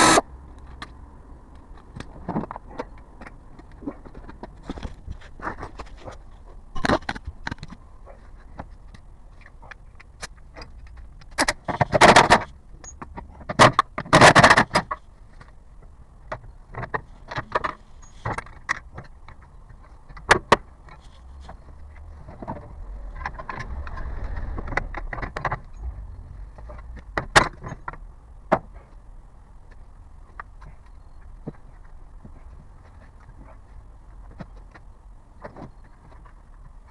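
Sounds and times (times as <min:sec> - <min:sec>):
low road rumble: 0:00.0 - 0:36.9
car knocking and rattling: 0:20.2 - 0:28.9.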